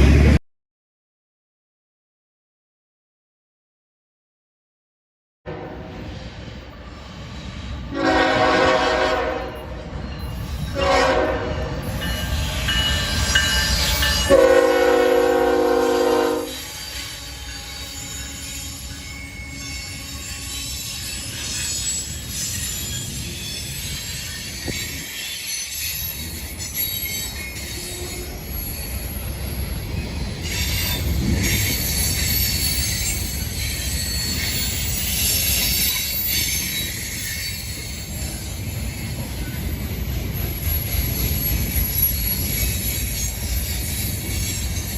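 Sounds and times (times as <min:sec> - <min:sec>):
passing train rumble: 0:00.0 - 0:00.4, 0:05.5 - 0:44.9
locomotive air horn blasts: 0:07.9 - 0:09.6, 0:10.8 - 0:11.6, 0:14.3 - 0:16.6.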